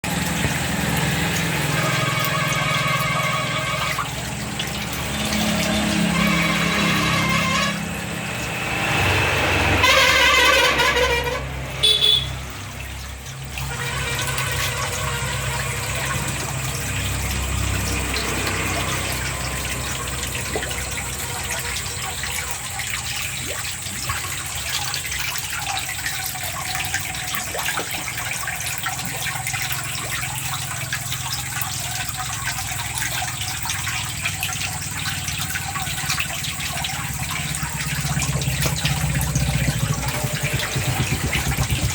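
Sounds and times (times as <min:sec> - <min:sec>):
water gushing: 0:00.0 - 0:41.9
low pump hum: 0:12.0 - 0:41.9
loud knocks: 0:38.2 - 0:41.9.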